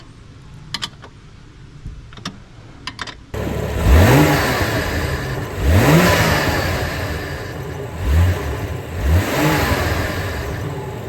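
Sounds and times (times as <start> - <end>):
car engine revving: 3.4 - 11.0.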